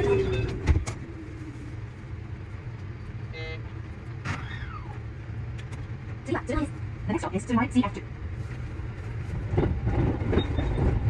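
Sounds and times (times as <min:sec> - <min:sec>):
train rumble: 0:00.0 - 0:11.0
train horn toot: 0:03.3 - 0:03.7
rail clicks: 0:08.5 - 0:11.0.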